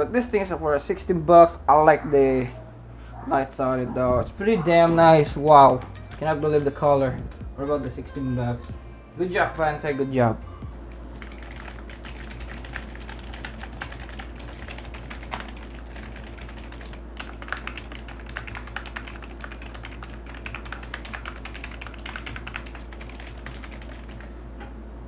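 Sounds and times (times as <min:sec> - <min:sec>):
steady low hum: 0:00.0 - 0:25.0
keyboard typing clicks: 0:11.2 - 0:24.3.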